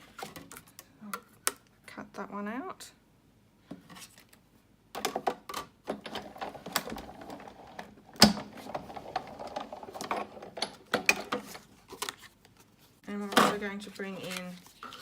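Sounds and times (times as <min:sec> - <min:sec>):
hand-cranked die-cutting machine: 0:05.9 - 0:11.5.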